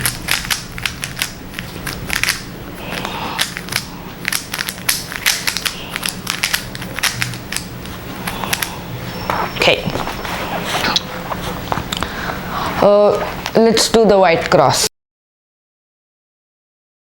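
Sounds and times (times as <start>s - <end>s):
puzzle cube layers clicking: 0.0s - 2.4s.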